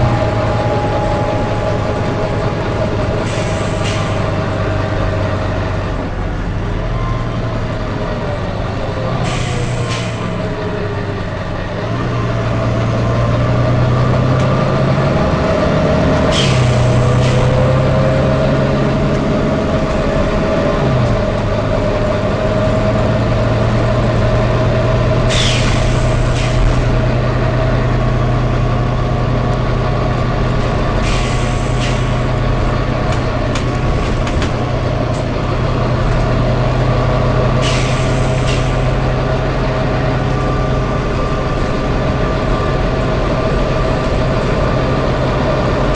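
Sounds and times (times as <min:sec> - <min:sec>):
diesel bus engine running: 0:00.0 - 0:45.9
air hissing from bus: 0:03.1 - 0:04.4, 0:09.2 - 0:10.5, 0:16.3 - 0:17.7, 0:25.3 - 0:26.9, 0:31.0 - 0:32.4, 0:37.4 - 0:39.2.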